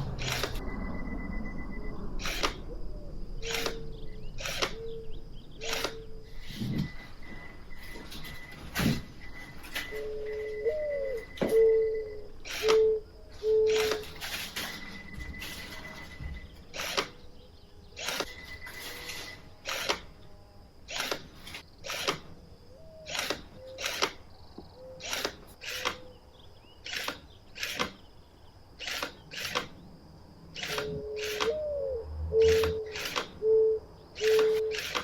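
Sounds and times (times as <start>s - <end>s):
short sharp clicks: 2.2s - 2.6s, 3.4s - 4.9s, 5.6s - 6.1s, 12.4s - 12.9s, 13.6s - 14.2s, 32.4s - 33.4s.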